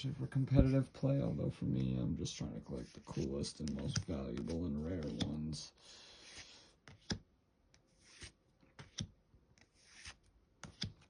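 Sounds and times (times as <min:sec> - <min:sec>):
cards rustling: 0:02.6 - 0:05.6, 0:07.9 - 0:11.0.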